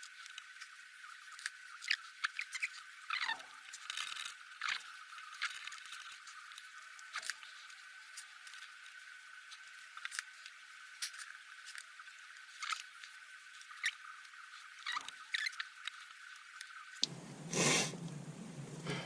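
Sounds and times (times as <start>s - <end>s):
steady high hiss: 4.6s - 19.0s.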